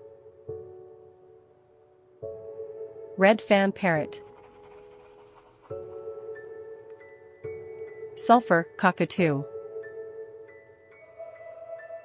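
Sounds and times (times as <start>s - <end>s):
soft chime-like background music: 5.9s - 12.0s.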